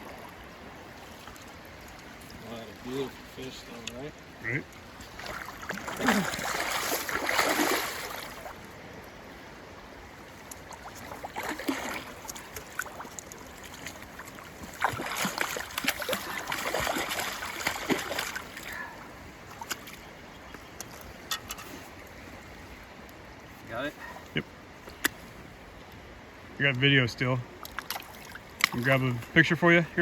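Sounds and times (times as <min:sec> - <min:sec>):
water splashing and dripping: 0:00.0 - 0:09.1, 0:10.1 - 0:21.6, 0:27.6 - 0:29.5
river water running: 0:00.0 - 0:30.0.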